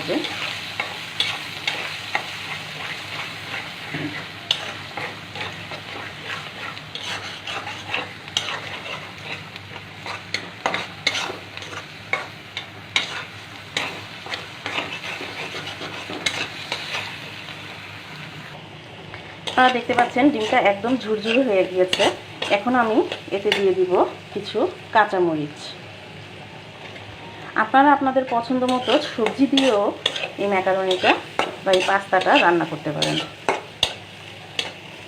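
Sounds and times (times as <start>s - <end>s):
eggs sizzling in oil: 0.0s - 35.0s
spatula scraping and tapping pan: 0.1s - 17.1s, 28.6s - 34.0s.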